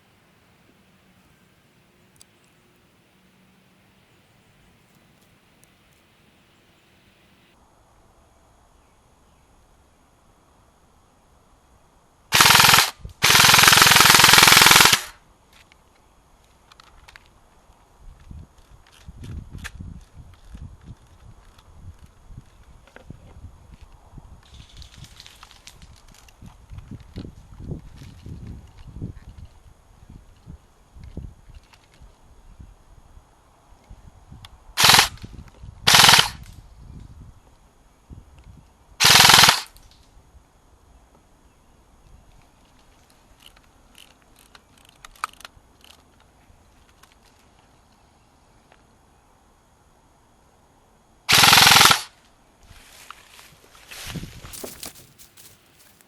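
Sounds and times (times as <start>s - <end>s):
airsoft gun firing bursts: 12.3s - 15.2s, 34.8s - 35.2s, 35.9s - 36.4s, 39.0s - 39.7s, 51.3s - 52.1s.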